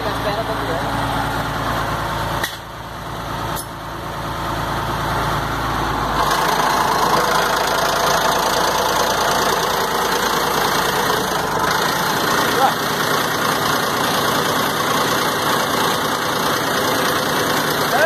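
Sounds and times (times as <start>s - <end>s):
piston water pump running: 6.2s - 18.0s.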